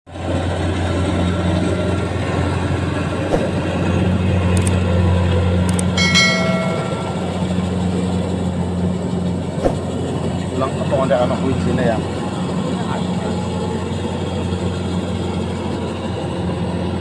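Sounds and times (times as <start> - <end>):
combine harvester engine drone: 0.1 - 17.0
brief high-pitched tone: 6.0 - 8.0.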